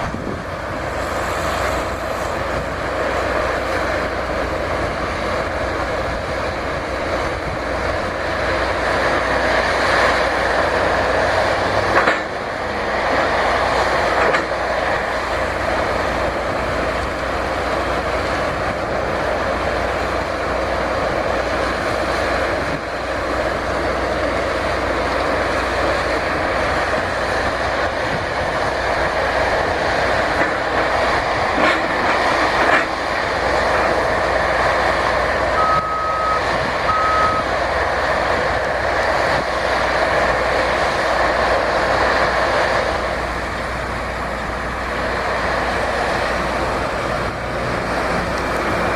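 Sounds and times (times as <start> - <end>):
steady rushing noise: 0.0 - 48.9
backup alarm beeping: 35.6 - 37.5.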